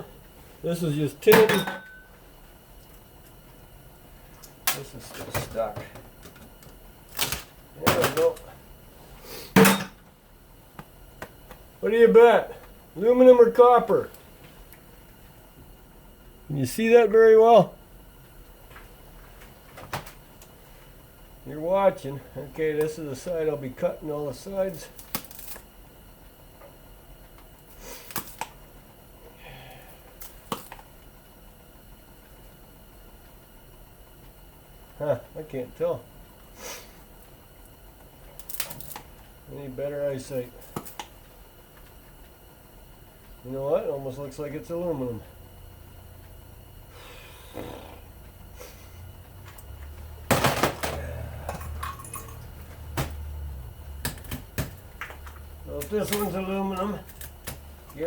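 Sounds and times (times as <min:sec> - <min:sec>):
low steady hum: 0:00.0 - 0:58.0
low hum: 0:45.2 - 0:58.0.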